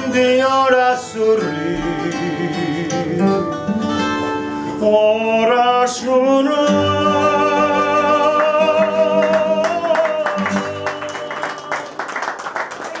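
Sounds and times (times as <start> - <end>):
plucked guitar chords: 0.0 - 5.7
audience applause: 8.7 - 13.0.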